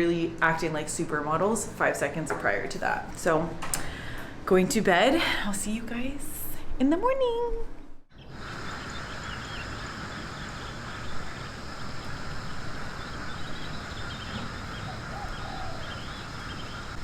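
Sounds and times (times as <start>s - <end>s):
steady background hiss: 7.6s - 17.0s
faint bird chirps: 8.1s - 17.0s.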